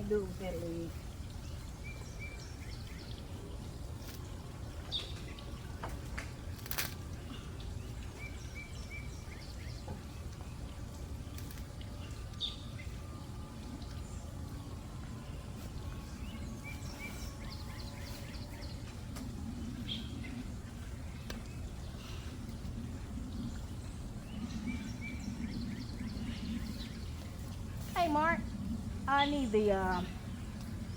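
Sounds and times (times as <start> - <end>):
small birds chirping: 0.0 - 30.9
low rumble: 13.0 - 30.9.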